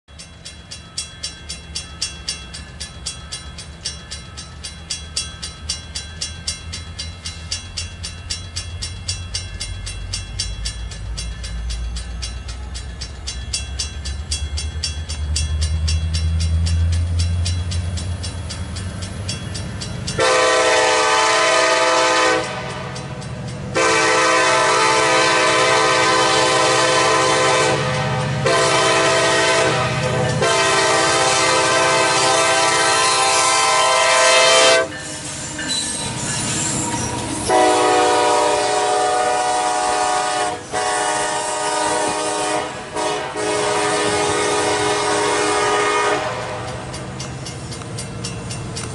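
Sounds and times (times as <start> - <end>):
crossing bell dinging: 0.1 - 48.9
diesel locomotive rumble: 0.1 - 48.9
locomotive air horn blasts: 20.2 - 23.0, 23.7 - 35.0, 37.4 - 46.8.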